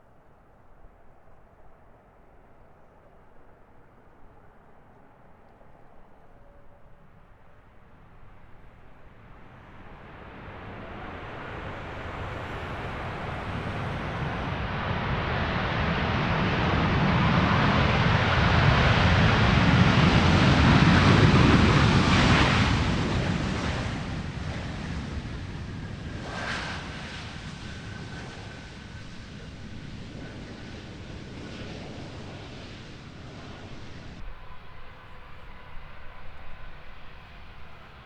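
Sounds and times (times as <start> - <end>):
jet airliner engine and airflow: 0.0 - 38.0
steady high whine: 8.2 - 38.0.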